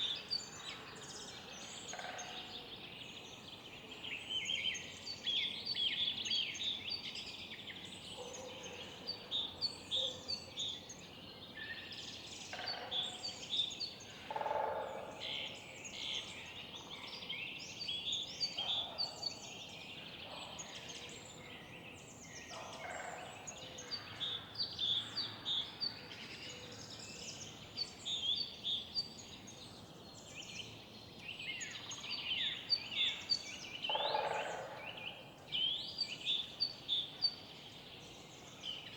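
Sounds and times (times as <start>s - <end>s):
songbirds chorus: 12.4s - 38.9s.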